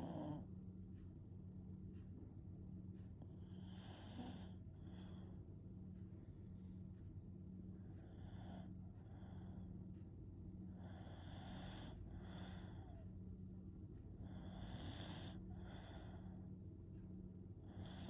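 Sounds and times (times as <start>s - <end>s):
dog snoring: 0.0s - 0.5s, 3.2s - 5.3s, 7.8s - 9.7s, 10.7s - 13.0s, 14.2s - 16.5s, 17.6s - 18.0s
steady low hum: 0.0s - 18.0s.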